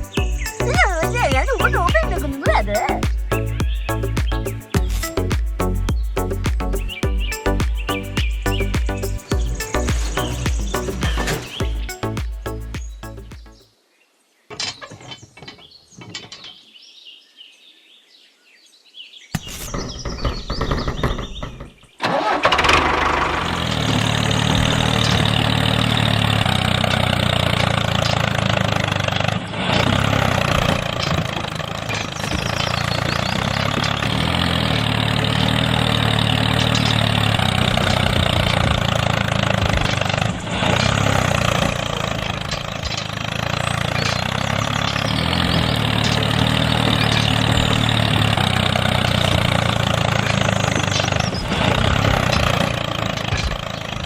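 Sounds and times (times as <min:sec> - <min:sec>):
small engine idling: 0:00.0 - 0:11.9, 0:20.0 - 0:54.0.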